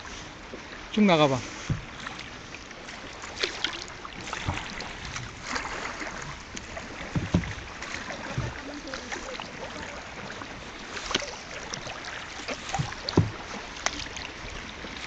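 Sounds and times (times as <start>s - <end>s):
kayak paddle splashing in water: 0.0s - 15.0s
low knocks: 7.0s - 8.7s, 12.5s - 13.5s.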